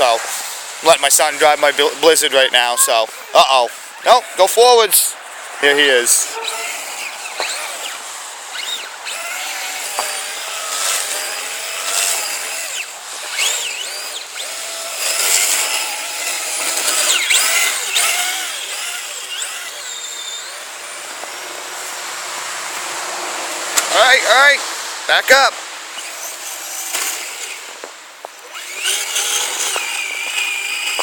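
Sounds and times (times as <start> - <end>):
electric motor whining: 5.6 - 22.0, 26.0 - 31.0.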